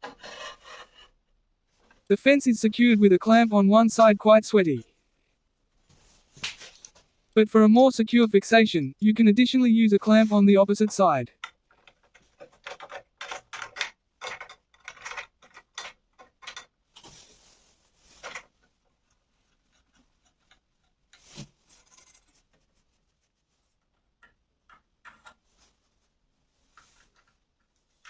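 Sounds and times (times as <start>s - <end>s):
metal parts clicking and knocking: 11.4s - 16.8s.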